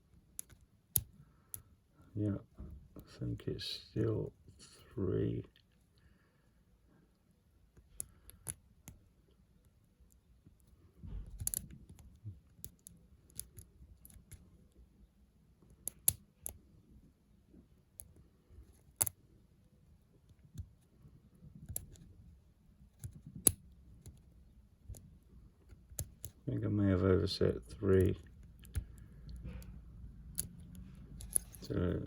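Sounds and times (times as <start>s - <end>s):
lock pick clicks and scrapes: 11.2s - 14.4s, 28.3s - 31.7s.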